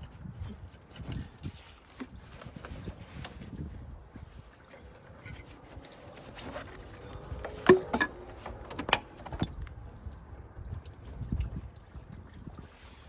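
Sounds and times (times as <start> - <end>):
hand tools clicking and clinking: 5.2 - 9.4.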